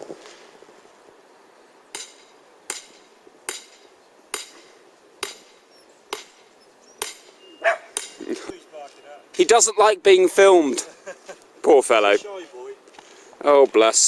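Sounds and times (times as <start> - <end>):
hammer striking metal: 5.2 - 5.5, 7.0 - 7.3.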